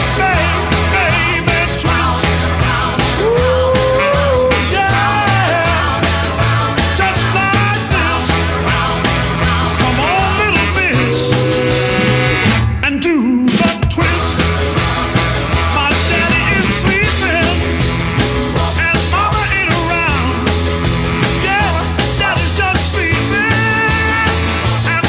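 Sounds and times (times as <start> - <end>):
person singing: 0.0 - 17.7
upbeat rock music: 0.0 - 25.0.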